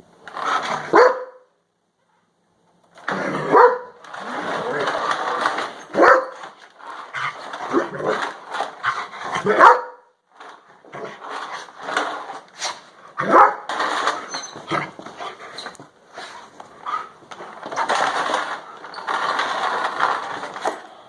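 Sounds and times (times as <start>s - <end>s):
dog barking: 0.9s - 1.5s, 3.4s - 4.0s, 6.0s - 6.4s, 9.4s - 10.1s, 13.2s - 13.7s.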